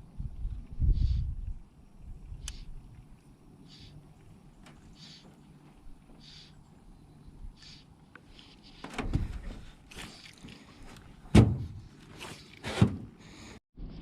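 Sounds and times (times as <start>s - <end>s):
knocks and thumps in a boat: 8.8s - 9.7s, 11.3s - 12.0s.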